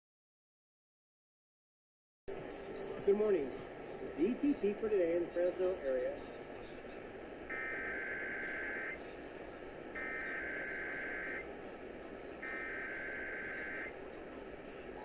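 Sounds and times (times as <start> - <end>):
radio hiss: 2.3 - 15.0
digital data tone bursts: 7.5 - 9.0, 10.0 - 11.5, 12.4 - 13.9.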